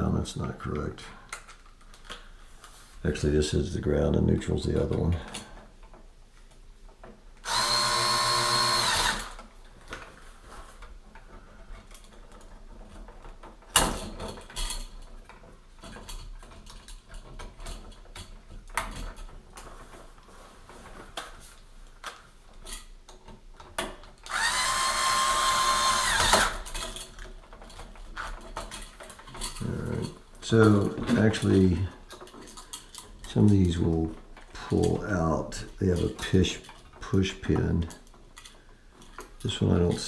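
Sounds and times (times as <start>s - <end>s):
small clicks and handling noises: 0.7s - 2.8s, 8.6s - 40.0s
cordless screwdriver whirring: 7.4s - 9.4s, 24.3s - 26.6s.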